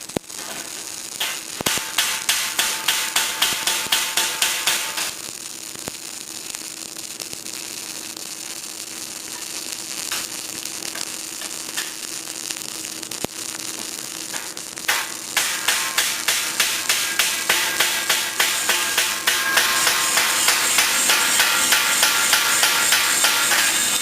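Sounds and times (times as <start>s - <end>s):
welding arc crackling hiss: 0.0s - 24.0s
rhythmic beat: 14.9s - 24.0s.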